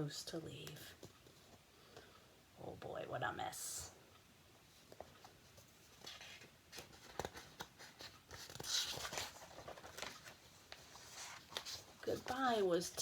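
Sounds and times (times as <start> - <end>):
paper page rustling: 4.9 - 13.0.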